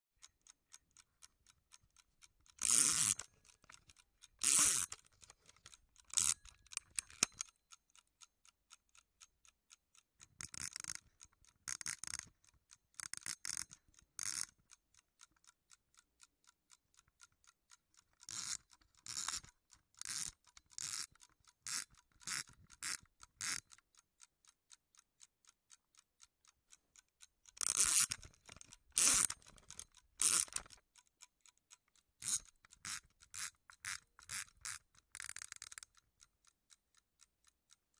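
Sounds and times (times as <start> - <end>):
alarm clock ticking: 0.2 - 37.9
ratcheting scrapes of winding knob: 1.7 - 7.5, 10.2 - 15.6, 17.2 - 23.8, 27.4 - 36.3.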